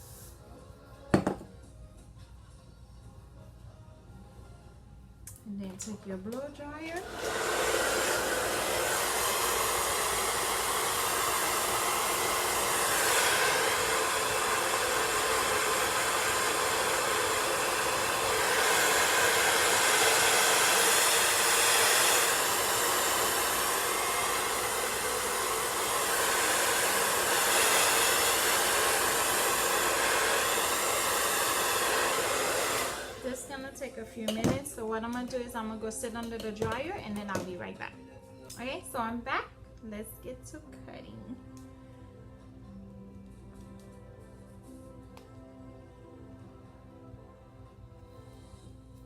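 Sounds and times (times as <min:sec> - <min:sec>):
blow dryer running: 0:06.9 - 0:34.6.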